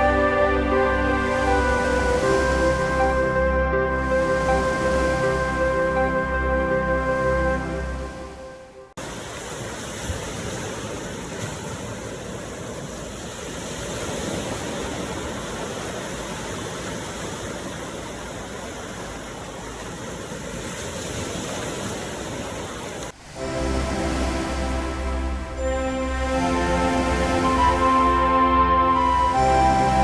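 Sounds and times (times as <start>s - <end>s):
soft music: 0.0s - 9.0s, 23.2s - 30.0s
ocean surf rushing: 0.0s - 30.0s.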